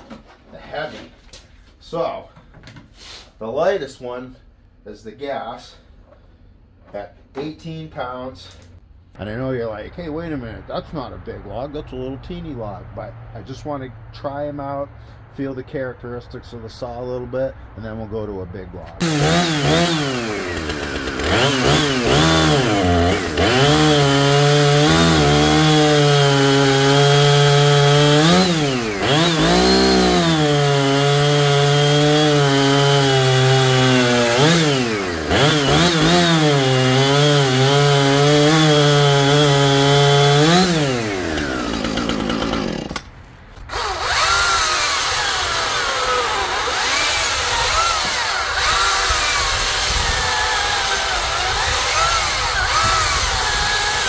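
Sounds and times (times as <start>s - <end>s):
chainsaw cutting a log: 19.0s - 43.1s, 43.7s - 54.0s.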